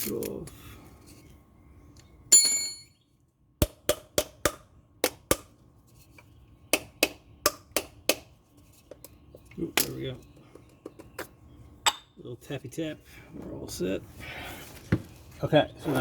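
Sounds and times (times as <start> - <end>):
metal clang ringing: 2.3 - 3.0.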